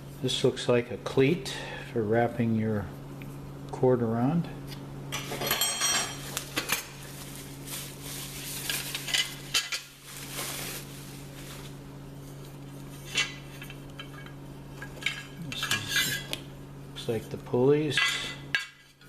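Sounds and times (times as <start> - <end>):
steady low hum: 0.0 - 19.0
packaging rustling: 6.2 - 11.8.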